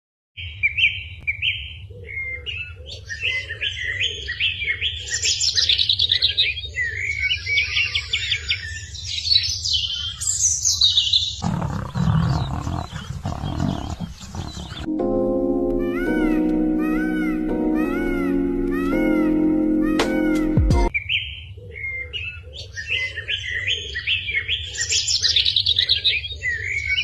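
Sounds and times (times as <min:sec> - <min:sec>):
birds chirping and trilling: 0:00.4 - 0:14.9, 0:16.0 - 0:27.0
big cat roaring: 0:11.4 - 0:14.9.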